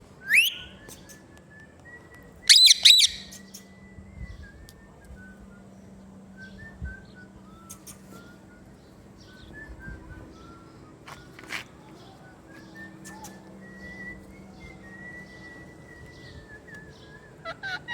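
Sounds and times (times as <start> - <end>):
parrot whistling and screeching: 0.3 - 0.7, 2.5 - 3.5, 17.4 - 17.9.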